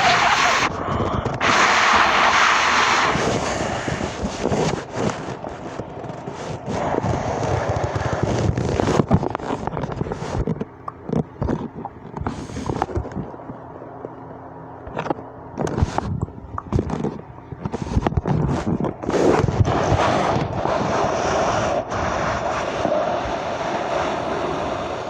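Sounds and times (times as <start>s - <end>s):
mouth blowing and hissing: 0.0s - 5.5s
mouth pops and clicks: 7.5s - 14.2s, 14.9s - 19.4s.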